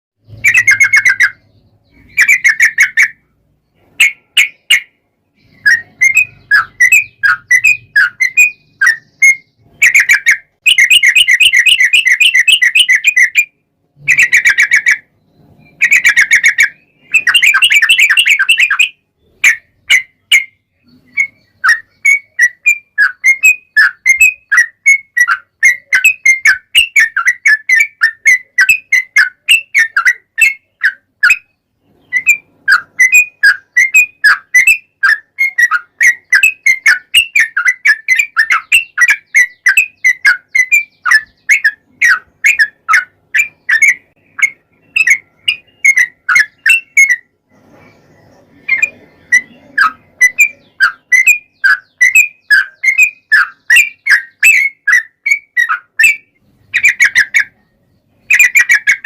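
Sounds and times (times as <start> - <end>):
bird chirping: 0.2 - 59.0
bird singing rolling trills: 0.2 - 59.0.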